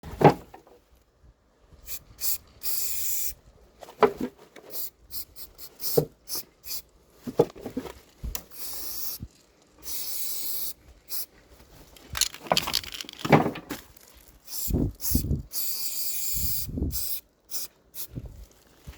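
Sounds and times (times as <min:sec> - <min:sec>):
spray paint can hissing: 0:01.9 - 0:03.4, 0:04.7 - 0:06.9, 0:08.5 - 0:11.3, 0:14.4 - 0:18.2.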